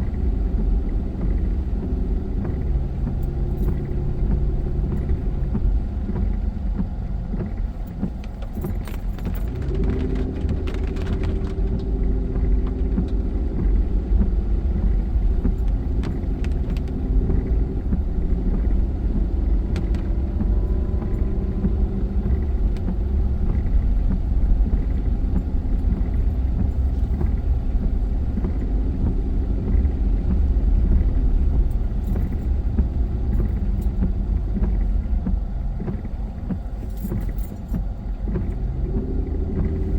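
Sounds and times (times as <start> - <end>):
car engine and tyres rumbling: 0.0 - 39.9
light rattles and clicks: 0.0 - 39.9.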